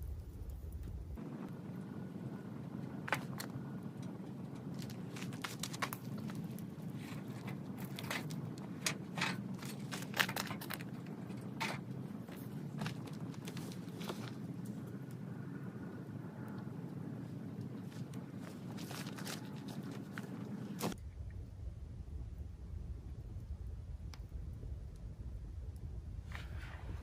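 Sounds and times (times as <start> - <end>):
wood fire crackling and popping: 0.0 - 21.0.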